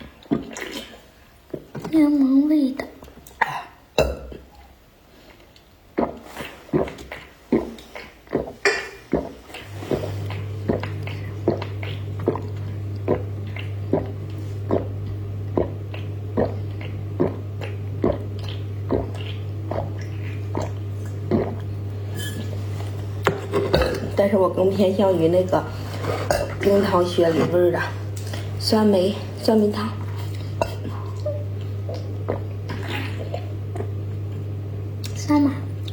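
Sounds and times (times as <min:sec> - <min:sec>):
person chewing crunchily: 0:05.3 - 0:21.9
steady low hum: 0:06.7 - 0:35.9.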